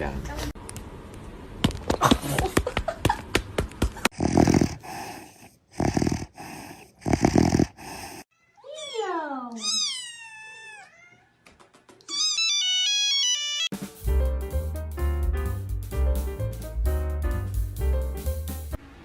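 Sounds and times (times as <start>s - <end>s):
cat meowing: 8.4s - 11.4s, 12.1s - 13.7s
cat crying harshly: 12.1s - 13.7s.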